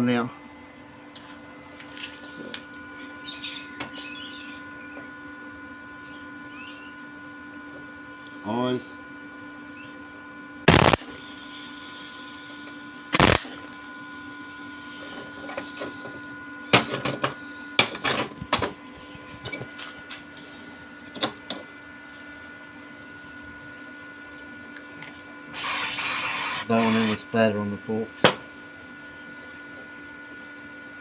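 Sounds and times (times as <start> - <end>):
electrical hum: 0.0 - 31.0
arc welding bursts: 10.7 - 12.5, 13.1 - 13.7, 25.5 - 27.2.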